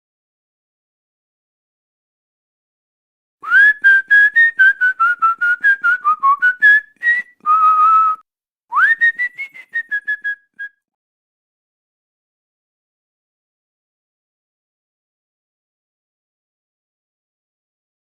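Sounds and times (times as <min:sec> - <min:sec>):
person whistling a tune: 0:03.4 - 0:10.9.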